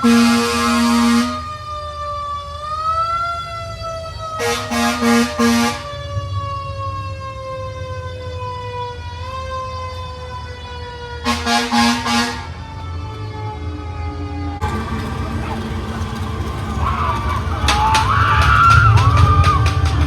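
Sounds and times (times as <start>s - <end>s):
air horn blasts: 0.0s - 1.6s, 4.4s - 6.0s, 11.1s - 13.6s
siren wailing: 0.0s - 20.0s.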